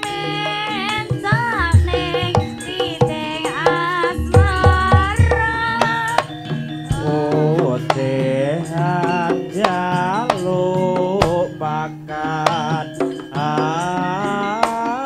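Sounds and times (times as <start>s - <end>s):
hand drum strokes: 0.0s - 11.7s.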